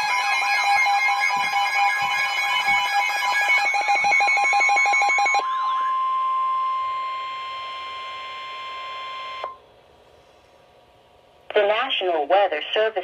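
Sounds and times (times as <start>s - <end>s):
steady high tone: 0.0s - 9.6s
warbling electronic alarm: 0.0s - 9.6s.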